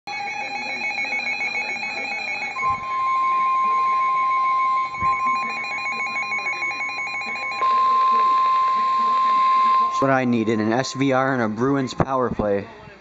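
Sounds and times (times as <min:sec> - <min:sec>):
electronic alarm beeping: 0:00.0 - 0:12.1
steady warning alarm tone: 0:00.0 - 0:12.3.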